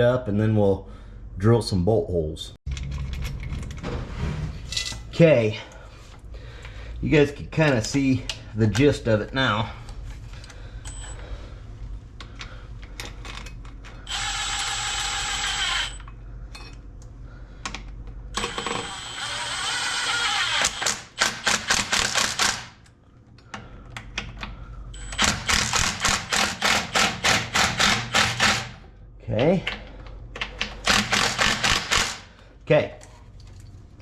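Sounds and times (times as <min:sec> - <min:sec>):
power drill whining: 0:14.0 - 0:16.0, 0:18.4 - 0:21.1.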